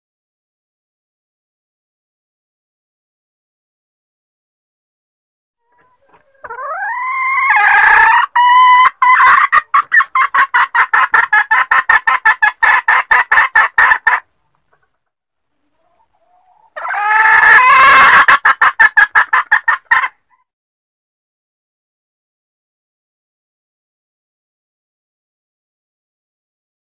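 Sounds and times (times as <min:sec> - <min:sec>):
hen cackling: 0:05.6 - 0:14.9, 0:15.8 - 0:20.5.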